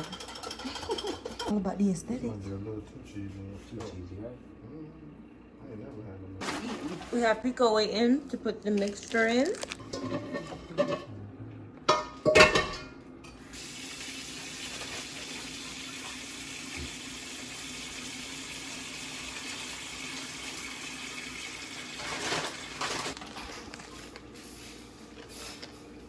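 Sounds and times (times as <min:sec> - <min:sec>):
tap running water into sink: 0:13.6 - 0:22.7.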